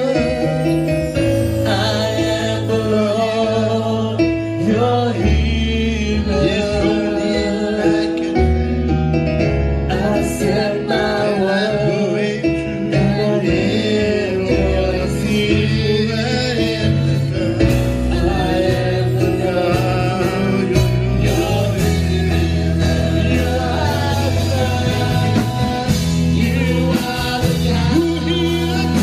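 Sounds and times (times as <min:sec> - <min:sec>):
gospel singing with instruments: 0:00.0 - 0:29.0.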